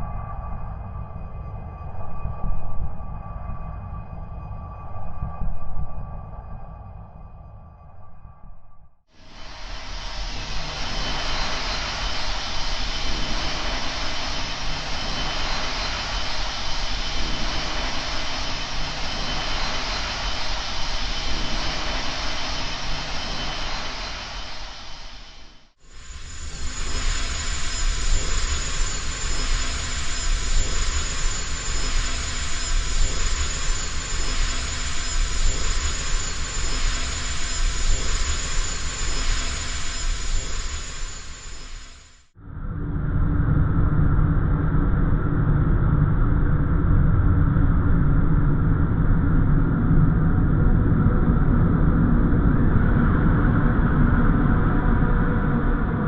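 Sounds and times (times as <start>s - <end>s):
thin high whine: 9.2s - 42.3s
loud rumbling roar with hiss: 9.2s - 45.3s.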